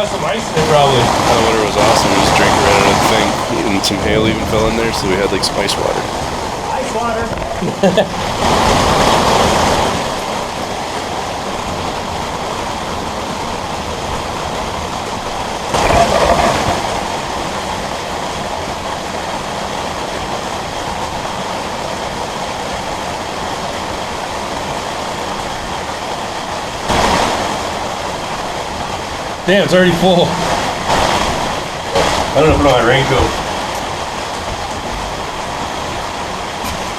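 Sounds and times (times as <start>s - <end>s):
heavy rain: 0.9s - 7.6s.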